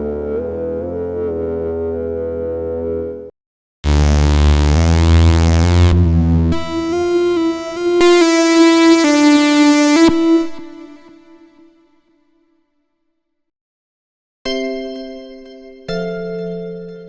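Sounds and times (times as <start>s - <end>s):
bright bass-heavy synthesizer sound: 3.8s - 11.6s
synthesizer melody over held note: 3.9s - 11.6s.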